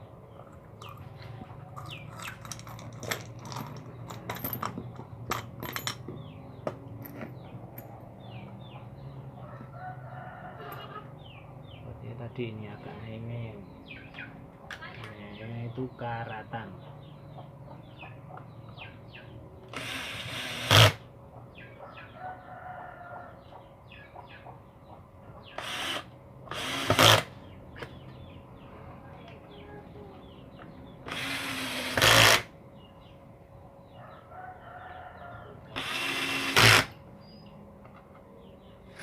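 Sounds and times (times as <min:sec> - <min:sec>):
handheld power tool bursts: 0:25.6 - 0:27.3, 0:31.1 - 0:32.5, 0:35.8 - 0:37.0.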